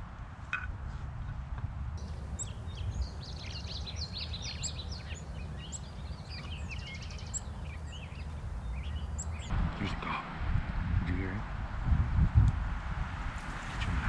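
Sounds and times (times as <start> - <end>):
songbirds chirping and singing: 2.0 - 9.5
steady low rumble: 2.0 - 9.5.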